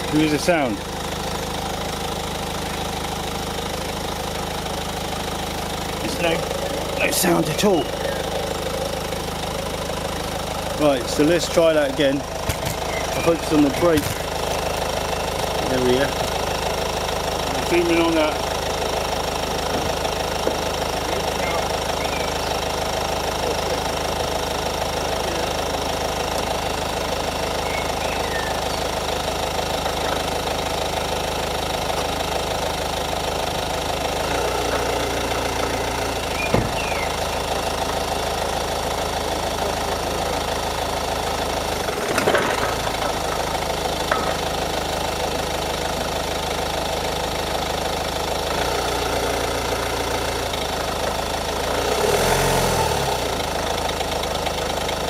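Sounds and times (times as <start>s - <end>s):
car engine idling: 0.0s - 55.0s
heavy clunk: 36.4s - 36.8s, 41.9s - 44.6s.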